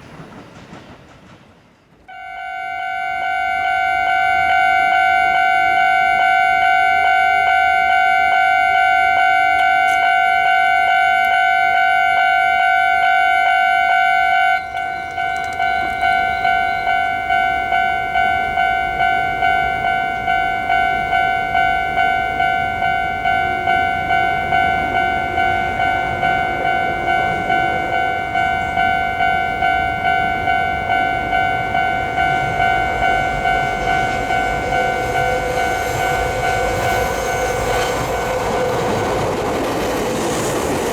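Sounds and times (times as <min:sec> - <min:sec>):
train rumble: 0:00.0 - 0:02.6, 0:14.3 - 0:40.9
level-crossing warning bell ringing: 0:02.1 - 0:40.9.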